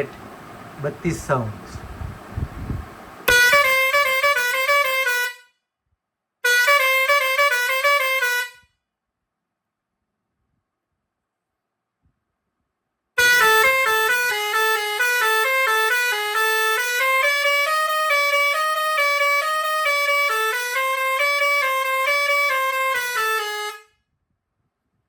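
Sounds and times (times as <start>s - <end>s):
air horn playing a tune: 3.2s - 5.5s, 6.4s - 8.7s, 13.2s - 24.0s.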